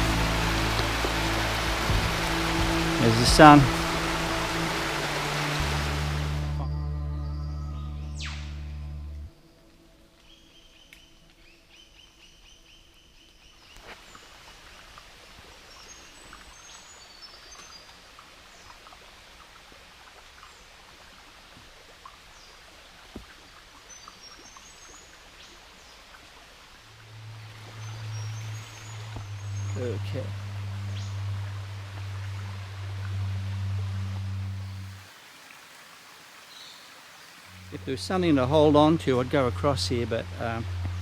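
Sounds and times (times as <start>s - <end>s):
birds chirping: 0.0s - 6.4s, 27.2s - 35.1s, 35.7s - 38.3s
steady hiss: 0.0s - 6.5s, 26.7s - 41.0s.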